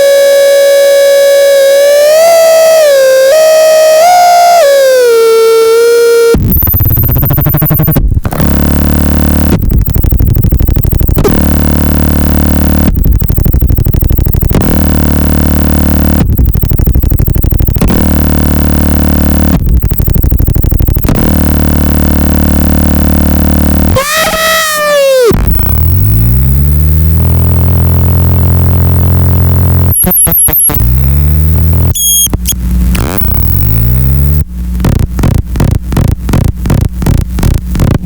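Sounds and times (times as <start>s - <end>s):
harsh glitchy buzzing: 0.0s - 38.0s
pitched squeal gliding down: 23.9s - 25.4s.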